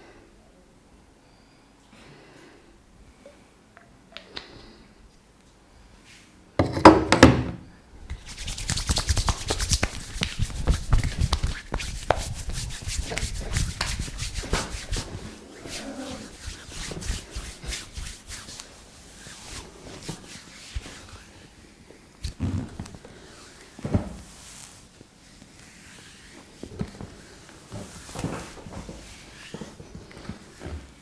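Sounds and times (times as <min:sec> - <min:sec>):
hands rubbing and striking skin: 0:08.1 - 0:21.3.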